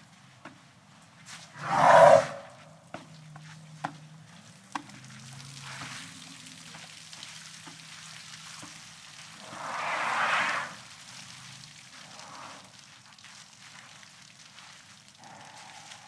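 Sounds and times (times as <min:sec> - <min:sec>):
elephant snort: 0:01.6 - 0:02.6, 0:09.4 - 0:10.9, 0:12.0 - 0:12.8, 0:15.2 - 0:16.0
soft crackling and rustling: 0:02.6 - 0:16.0.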